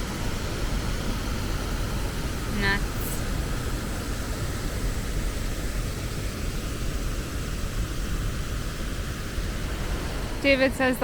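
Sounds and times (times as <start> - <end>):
river water rushing over rapids: 7.7 - 11.0.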